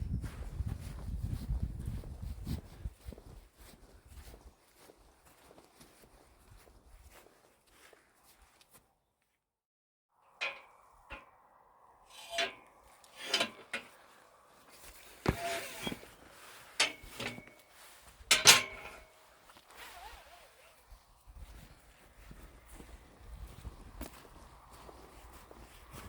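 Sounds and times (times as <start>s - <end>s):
sharp knocks and clanks: 12.1s - 14.0s, 15.3s - 16.0s, 16.8s - 17.6s, 18.3s - 19.1s
brief metallic ring: 18.3s - 19.1s.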